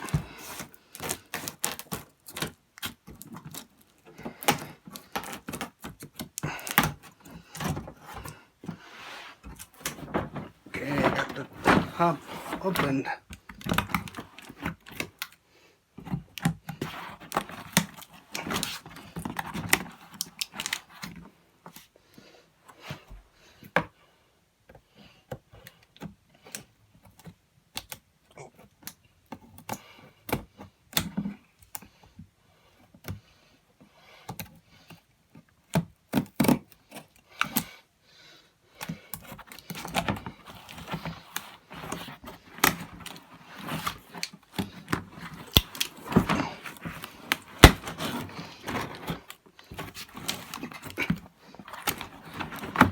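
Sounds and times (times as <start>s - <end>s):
cardboard box being handled: 6.8s - 13.1s, 39.4s - 52.9s.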